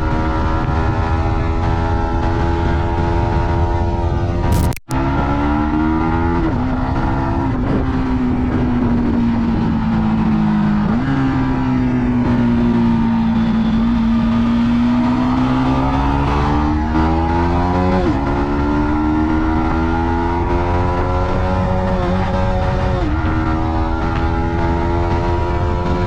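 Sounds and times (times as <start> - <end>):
motorcycle engine shifting gears: 0.0 - 26.0
brief click: 4.5 - 5.0.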